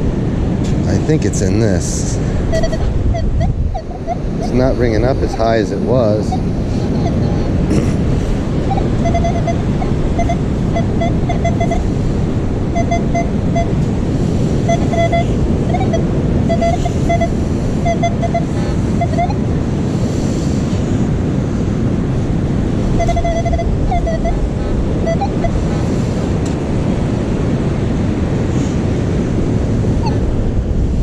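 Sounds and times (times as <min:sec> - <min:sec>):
wind: 0:00.0 - 0:31.0
metal detector beeps: 0:02.5 - 0:07.4, 0:08.6 - 0:11.9, 0:12.7 - 0:13.8, 0:14.6 - 0:19.4, 0:23.0 - 0:25.9.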